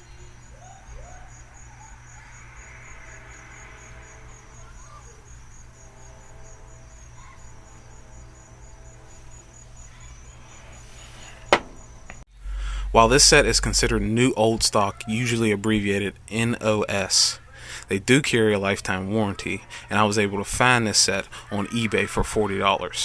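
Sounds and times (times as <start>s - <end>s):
faint insect chirping: 0.0s - 14.9s
low steady hum: 10.9s - 14.8s.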